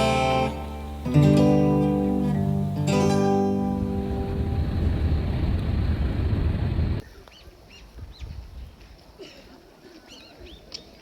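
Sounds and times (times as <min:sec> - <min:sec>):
background music: 0:00.0 - 0:04.8
small birds chirping: 0:07.0 - 0:08.8, 0:10.0 - 0:11.0.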